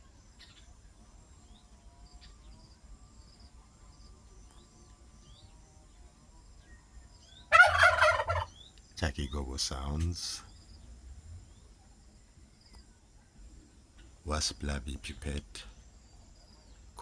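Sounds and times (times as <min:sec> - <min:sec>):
turkey gobbling: 0:07.5 - 0:08.6.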